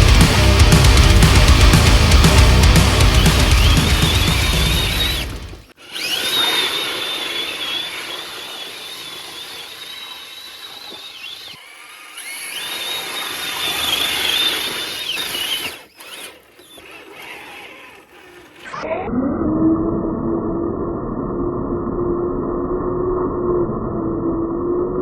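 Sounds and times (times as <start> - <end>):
electric motor whining: 0.0 - 19.0.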